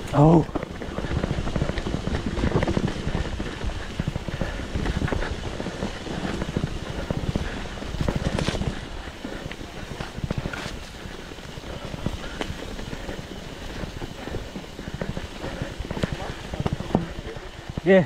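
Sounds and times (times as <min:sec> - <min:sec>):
mountain bike rattling over rocks: 0:00.0 - 0:18.0
wind rumble on microphone: 0:00.0 - 0:18.0.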